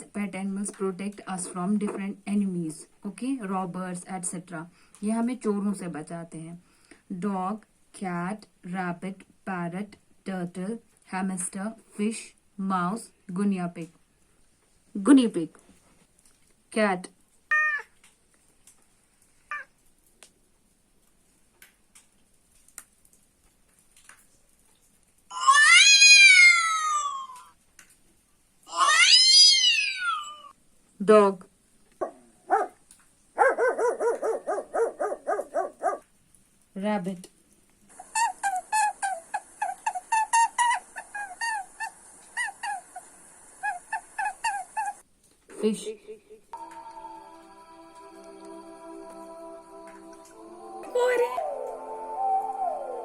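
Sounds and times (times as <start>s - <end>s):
cat meowing: 17.5s - 18.0s, 19.5s - 19.7s, 25.3s - 27.5s, 28.7s - 30.5s
rabbit squeaks: 38.0s - 45.0s.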